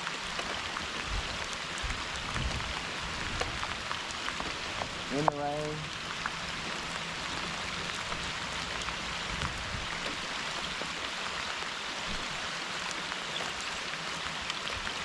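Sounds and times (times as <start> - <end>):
steady rain: 0.0 - 15.0.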